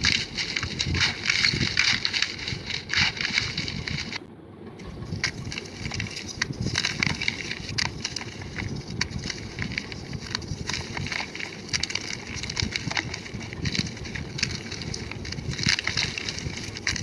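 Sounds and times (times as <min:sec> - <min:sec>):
chalk crushed and crumbled: 0:00.0 - 0:04.2, 0:05.0 - 0:17.0.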